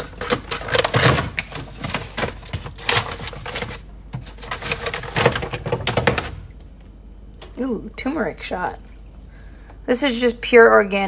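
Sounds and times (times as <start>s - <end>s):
plastic bag crinkling: 0.0s - 6.4s
items clattering: 0.0s - 6.6s.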